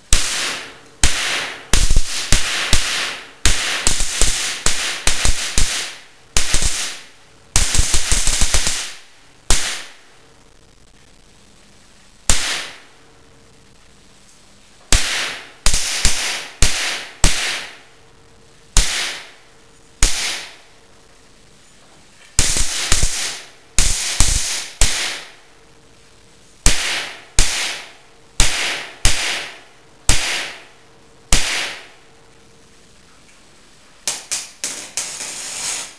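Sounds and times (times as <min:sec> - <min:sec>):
sharp loud bangs: 0:00.1 - 0:10.0, 0:12.3 - 0:12.9, 0:14.9 - 0:17.8, 0:18.8 - 0:19.4, 0:20.0 - 0:20.6, 0:22.4 - 0:25.4, 0:26.6 - 0:30.7, 0:31.3 - 0:32.0.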